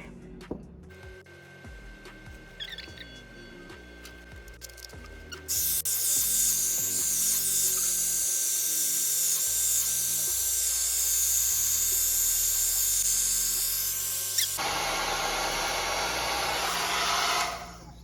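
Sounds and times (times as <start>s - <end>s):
hair dryer brush blowing: 14.6s - 17.8s.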